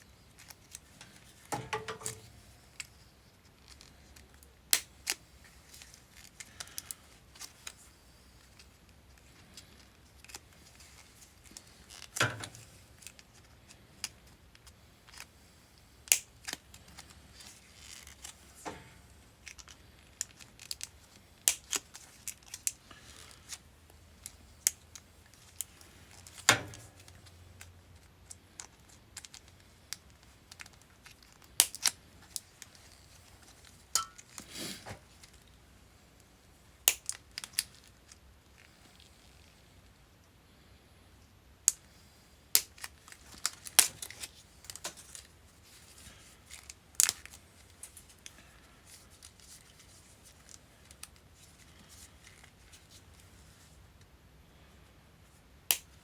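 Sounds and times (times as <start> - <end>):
plastic sheathing cracking: 19.4 - 23.6, 36.8 - 38.2, 42.5 - 45.8.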